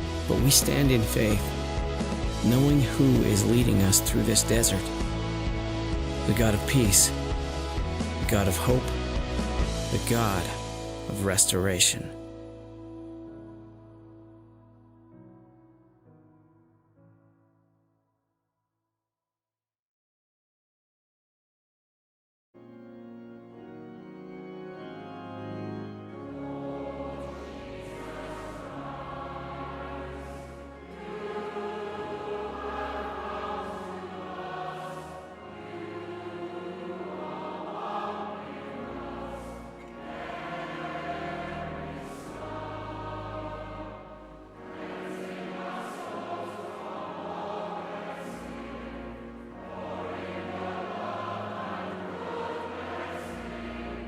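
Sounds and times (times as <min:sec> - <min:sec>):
choir singing a hymn: 0:00.0 - 0:12.1, 0:24.7 - 0:54.0
sustained accompaniment chords: 0:00.0 - 0:16.4, 0:22.6 - 0:54.0.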